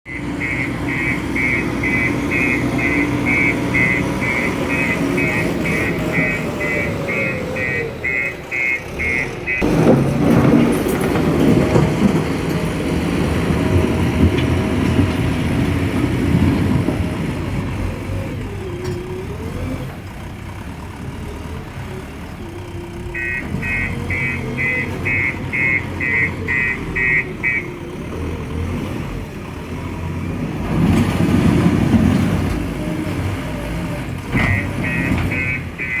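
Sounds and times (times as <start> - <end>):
reversing alarm beeping: 0.1 - 9.7, 23.1 - 27.8, 34.4 - 36.0
diesel engine under load: 0.1 - 36.0.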